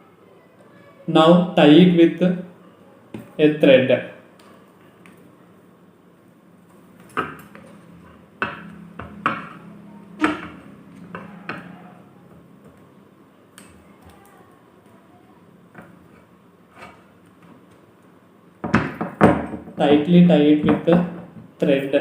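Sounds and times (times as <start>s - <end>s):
iron rods and stick knocking: 7.1s - 11.8s.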